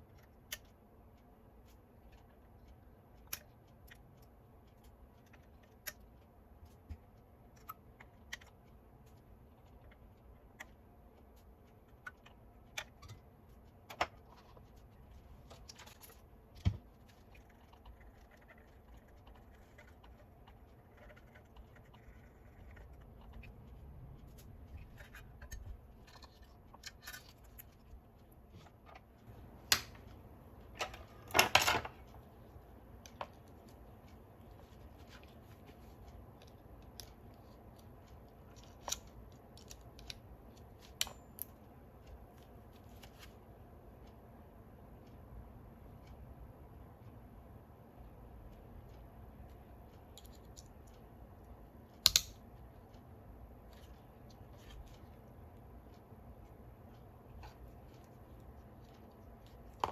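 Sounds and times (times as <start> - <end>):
small parts clicking and tapping: 0.0 - 14.9, 15.5 - 30.2, 33.0 - 43.3, 49.9 - 51.0, 51.9 - 52.6, 57.3 - 59.9.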